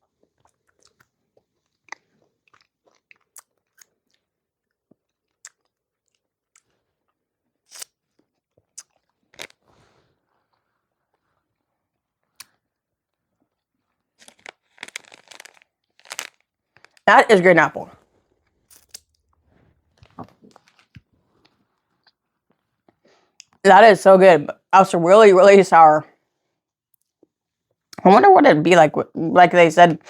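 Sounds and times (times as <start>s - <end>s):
lip smacks and mouth clicks: 0.4s - 6.8s, 7.7s - 9.6s, 12.2s - 12.6s
cotton candy crackling: 8.7s - 9.6s, 14.1s - 17.7s.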